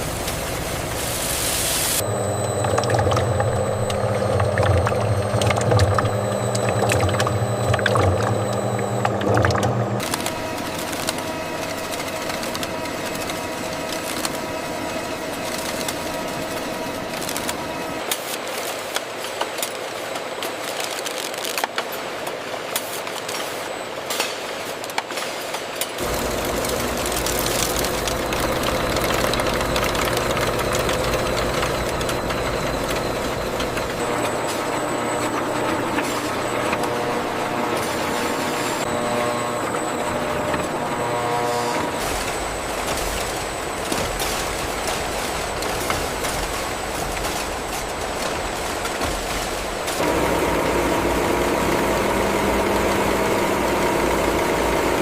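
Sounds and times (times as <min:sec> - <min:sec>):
machinery running: 0:00.0 - 0:20.6, 0:25.9 - 0:55.0
deep hum: 0:02.0 - 0:10.0, 0:26.0 - 0:44.9.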